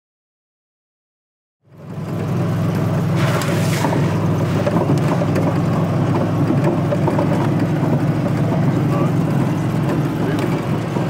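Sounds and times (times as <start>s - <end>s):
road noise: 1.6s - 11.0s
vehicle engine drone: 1.6s - 11.0s
brief hiss: 3.2s - 4.1s.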